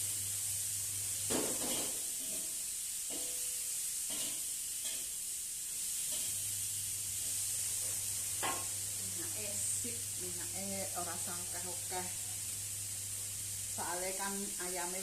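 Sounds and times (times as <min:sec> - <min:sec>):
food sizzling in oil: 0:00.0 - 0:15.0
low steady hum: 0:06.1 - 0:15.0.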